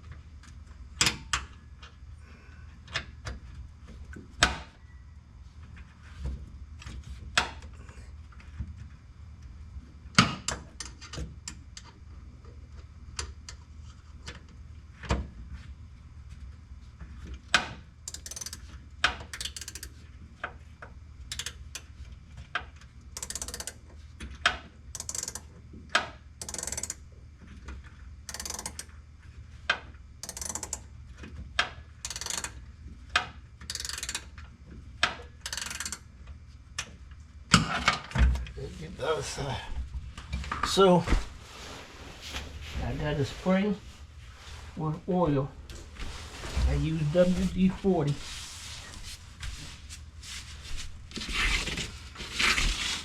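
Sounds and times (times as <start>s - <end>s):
ratchet wrench clicking: 18.1s - 20.0s, 21.3s - 21.9s, 23.2s - 23.8s, 24.9s - 25.5s, 26.4s - 27.0s, 28.3s - 28.9s, 30.2s - 30.9s, 32.0s - 32.7s, 33.6s - 34.4s, 35.4s - 36.1s.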